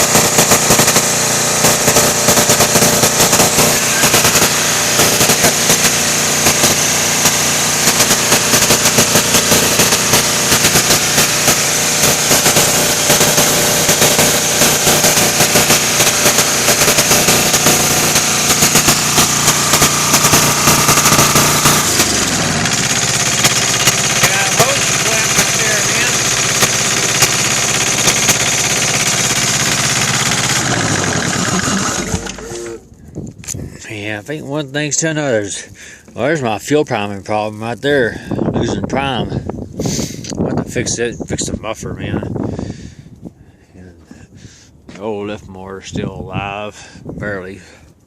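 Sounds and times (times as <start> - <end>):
diesel engine exhaust clatter: 0.0 - 34.2.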